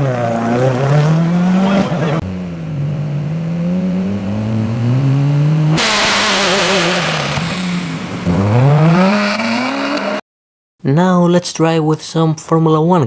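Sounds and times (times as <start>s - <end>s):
rally car engine revving: 0.0s - 10.2s.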